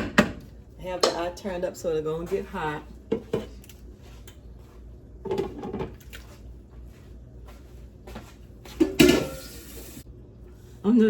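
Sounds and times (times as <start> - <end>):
pots and pans clattering: 5.2 - 5.9, 8.8 - 9.8.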